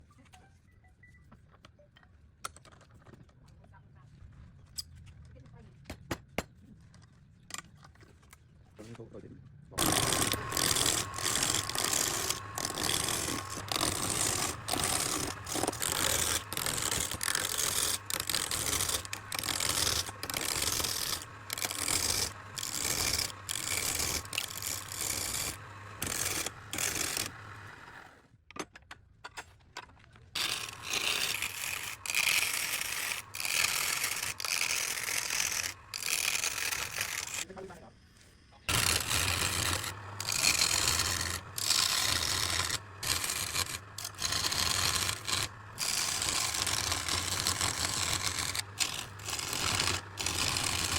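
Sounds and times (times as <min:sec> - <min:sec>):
lathe hum: 0:09.8 - 0:28.2, 0:30.4 - 0:37.4, 0:38.7 - 0:50.9
lathe tool scraping wood: 0:09.8 - 0:28.2, 0:30.4 - 0:37.6, 0:38.7 - 0:50.9.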